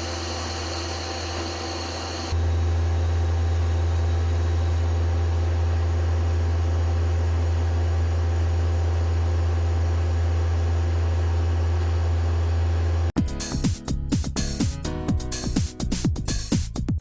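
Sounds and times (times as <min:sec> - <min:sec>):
lathe machine hum with tones: 0:00.0 - 0:13.1.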